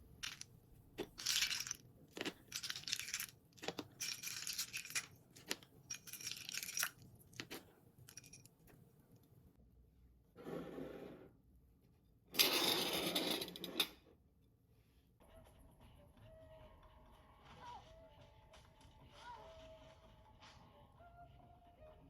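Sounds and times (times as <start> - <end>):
crinkly rustling: 0.2 - 8.5.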